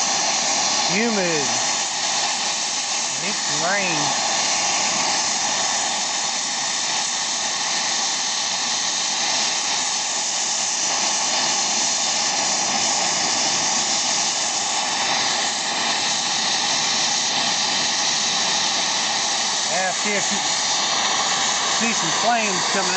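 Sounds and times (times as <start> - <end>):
gas torch hissing: 0.0 - 22.9.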